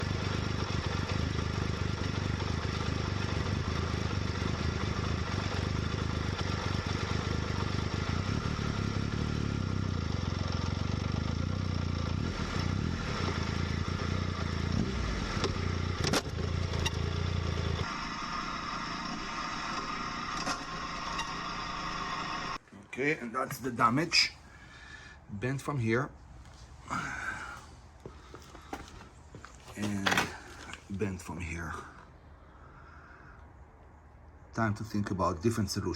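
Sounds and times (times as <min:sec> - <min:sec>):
motorcycle engine idling: 0:00.0 - 0:22.6.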